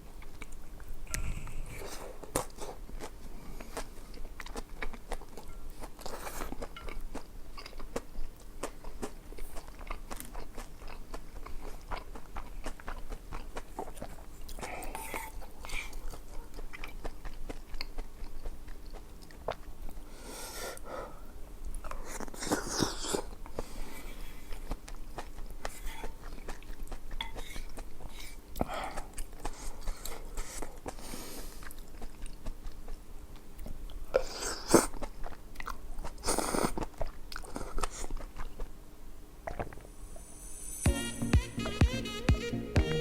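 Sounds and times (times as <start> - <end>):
person chewing food: 0.0 - 38.8, 39.4 - 39.9
wet mouth clicks: 39.4 - 39.8.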